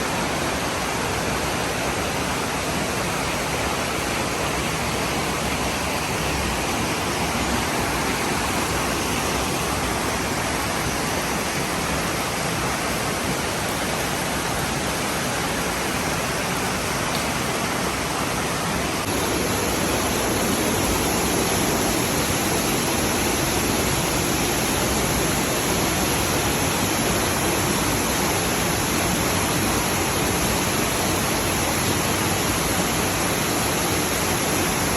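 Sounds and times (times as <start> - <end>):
waterfall pouring: 16.8 - 34.9.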